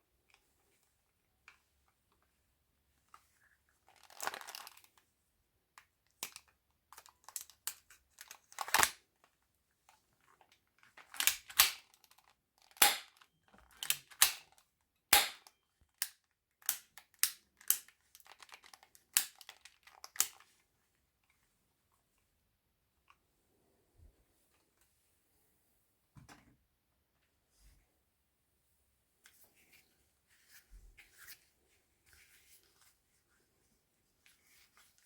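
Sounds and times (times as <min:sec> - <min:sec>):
replica guns clicking and clacking: 0:12.8 - 0:14.5.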